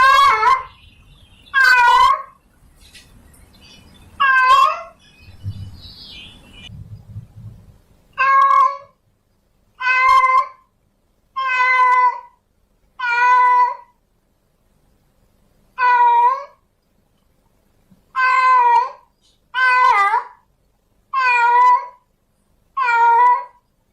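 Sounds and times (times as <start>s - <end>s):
cat meowing: 1.6s - 2.3s, 4.2s - 5.0s, 8.2s - 9.0s, 9.8s - 10.7s, 11.4s - 12.4s, 13.0s - 13.9s, 15.8s - 16.6s, 18.1s - 20.4s, 21.1s - 22.0s, 22.8s - 23.6s.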